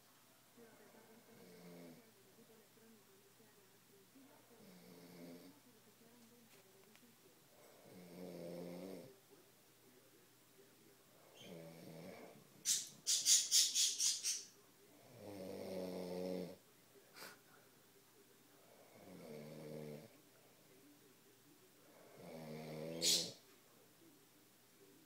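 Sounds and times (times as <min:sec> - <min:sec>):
man snoring: 0:18.8 - 0:20.1, 0:22.0 - 0:23.0.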